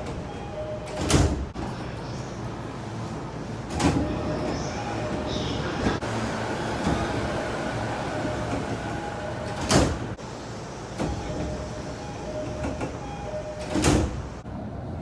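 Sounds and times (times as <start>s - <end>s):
subway doors sliding: 0.0s - 15.0s.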